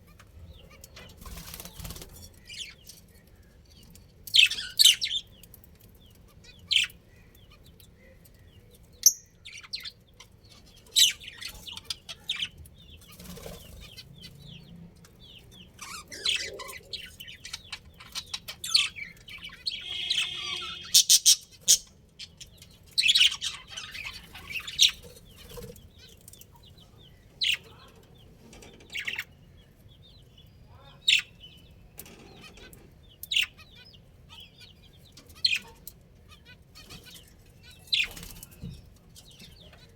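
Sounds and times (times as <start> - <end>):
budgerigars chirping: 9.0 - 27.9, 30.7 - 38.4
budgerigar warbling call: 19.7 - 21.9.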